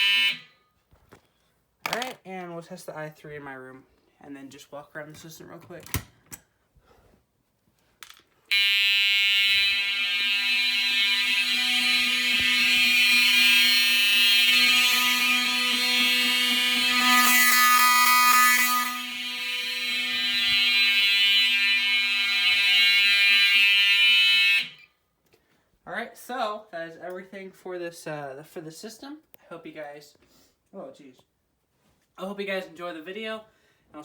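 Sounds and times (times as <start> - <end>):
fire alarm horn buzzing: 0.0 - 0.7, 8.5 - 25.0.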